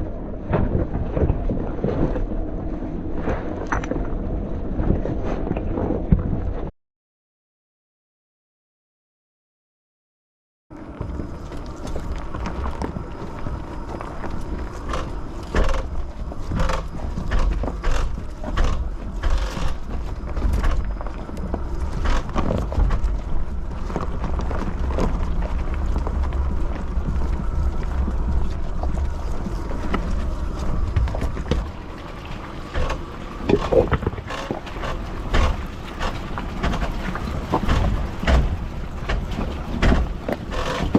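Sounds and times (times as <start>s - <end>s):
truck low rumble: 10.7s - 40.9s
truck knocking over rocks: 32.7s - 40.9s.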